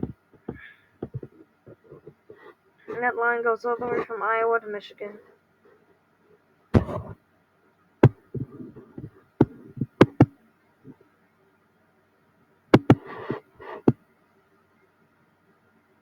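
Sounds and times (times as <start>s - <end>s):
keyboard taps: 0.0s - 2.2s, 8.0s - 8.6s, 9.4s - 10.3s, 12.8s - 14.0s
mouse clicks: 12.8s - 14.0s.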